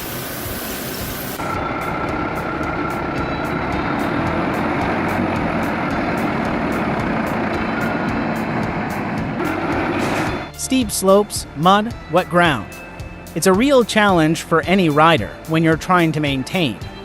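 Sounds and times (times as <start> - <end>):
heavy vehicle engine running: 0.0 - 10.6
background music beat: 1.4 - 17.0.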